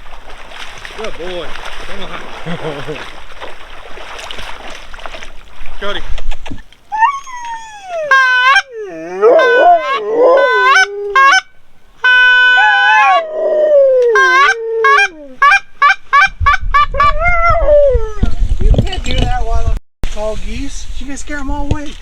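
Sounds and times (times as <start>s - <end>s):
geese honking: 8.0s - 13.0s.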